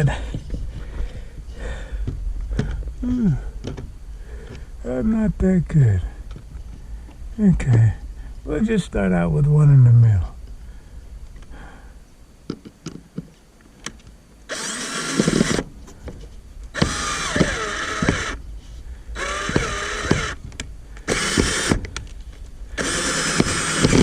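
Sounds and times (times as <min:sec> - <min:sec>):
power drill drilling into wood: 0:14.5 - 0:15.6, 0:16.7 - 0:18.4, 0:19.2 - 0:20.4, 0:21.1 - 0:21.8, 0:22.8 - 0:24.0.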